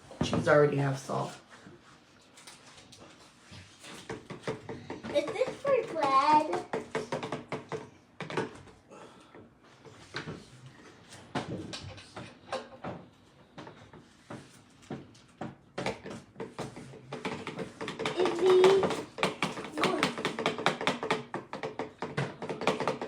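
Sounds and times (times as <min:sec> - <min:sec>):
knocks and clicks on counter: 0:04.1 - 0:08.7, 0:13.6 - 0:23.0.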